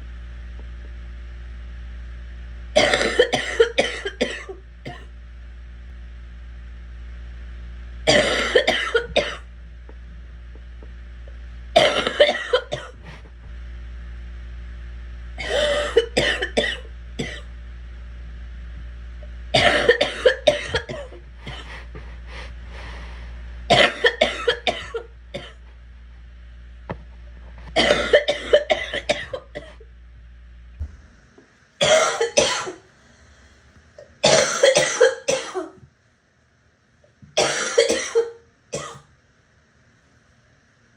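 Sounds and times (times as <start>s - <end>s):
low hum: 0.0s - 34.8s
girl coughing: 2.8s - 5.1s, 8.1s - 9.4s, 11.8s - 13.0s, 15.4s - 17.5s, 19.6s - 21.6s, 23.7s - 25.6s, 27.8s - 29.8s, 31.8s - 32.8s, 34.2s - 35.8s, 37.4s - 39.0s.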